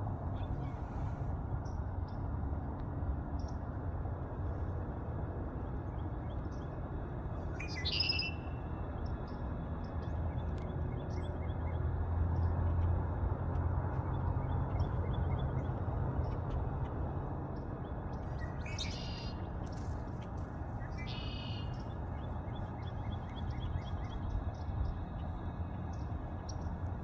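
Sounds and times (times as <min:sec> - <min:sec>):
faint bird chirps: 0:07.6 - 0:08.6, 0:18.4 - 0:19.4, 0:20.9 - 0:21.9.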